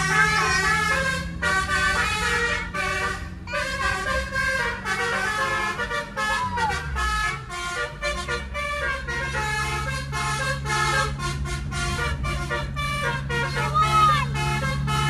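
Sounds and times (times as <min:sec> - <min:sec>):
musical air horn melody: 0:00.0 - 0:15.0.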